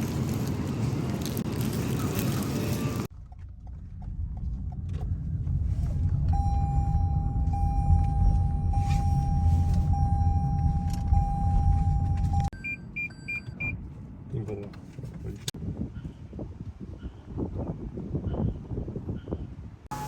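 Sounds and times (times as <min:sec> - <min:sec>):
short high beeps: 0:06.4 - 0:13.8.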